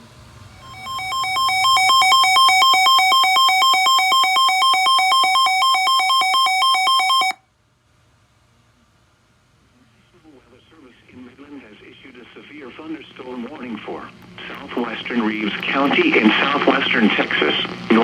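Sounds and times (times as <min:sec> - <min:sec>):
two-tone electronic alarm: 0:00.6 - 0:07.4.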